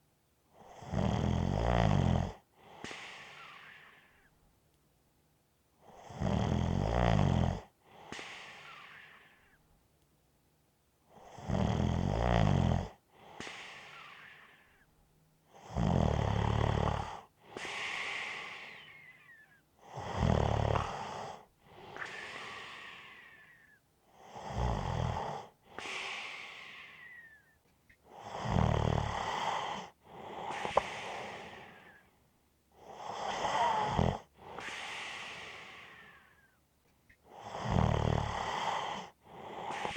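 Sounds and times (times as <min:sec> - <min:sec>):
person snoring: 0:15.7 - 0:21.4, 0:24.3 - 0:27.4, 0:28.2 - 0:32.0, 0:32.8 - 0:36.4, 0:37.4 - 0:39.9.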